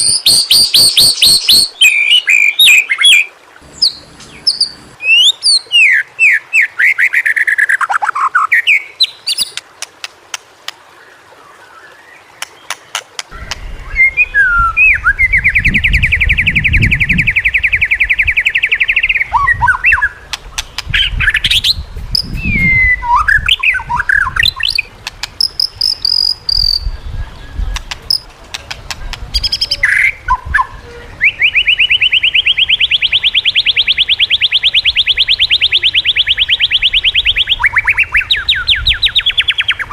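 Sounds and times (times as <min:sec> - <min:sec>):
bird singing whistled phrases: 0:00.0 - 0:07.7, 0:13.4 - 0:20.2, 0:21.2 - 0:24.8, 0:29.4 - 0:39.9.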